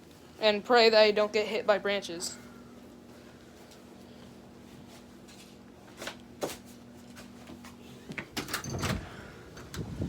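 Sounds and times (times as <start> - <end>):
microwave oven humming: 0.0 - 10.0.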